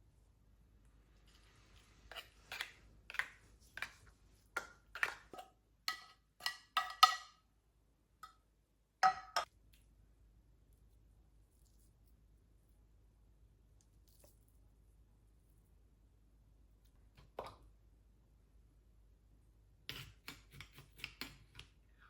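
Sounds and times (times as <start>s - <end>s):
kitchenware knocking and clinking: 4.6s - 7.4s, 9.0s - 9.5s.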